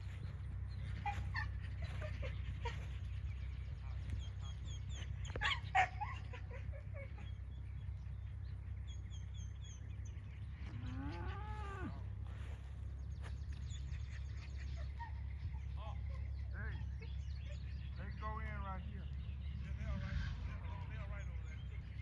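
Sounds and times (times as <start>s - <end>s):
small birds chirping: 0.0s - 22.0s
steady low rumble: 0.0s - 22.0s
cow mooing: 10.6s - 12.2s.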